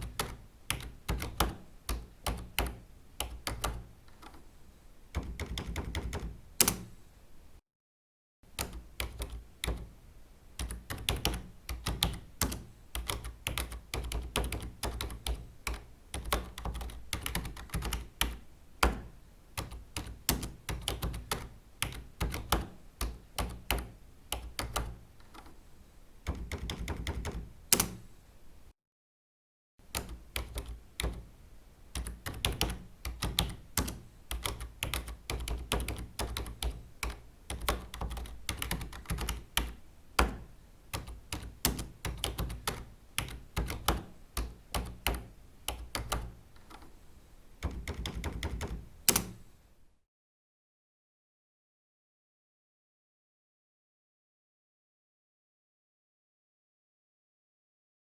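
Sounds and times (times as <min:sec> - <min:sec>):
typing on computer keyboard: 0:00.0 - 0:04.4, 0:05.1 - 0:07.0, 0:08.5 - 0:10.0, 0:10.6 - 0:25.6, 0:26.2 - 0:28.1, 0:29.8 - 0:31.3, 0:31.9 - 0:47.0, 0:47.6 - 0:49.4.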